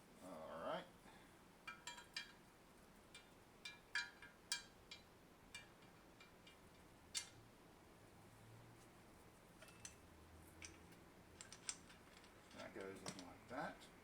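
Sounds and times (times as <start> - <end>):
small metal parts clicking and clinking: 1.7 - 2.4, 3.1 - 7.4, 9.6 - 13.6.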